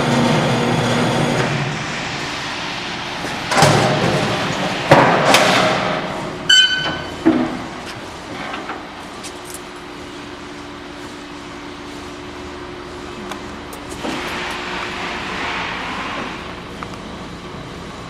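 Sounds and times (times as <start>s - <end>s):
steady hum: 0.0s - 18.0s
heavy metal knocks and bangs: 3.1s - 8.9s.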